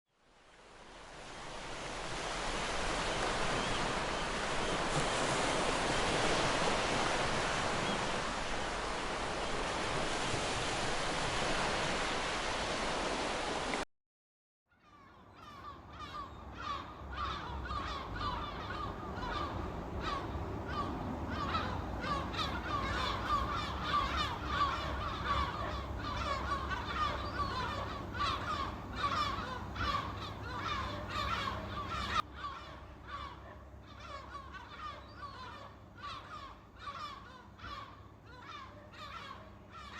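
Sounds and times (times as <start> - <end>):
rushing water: 0.2 - 13.8
flock of birds calling: 14.8 - 39.9.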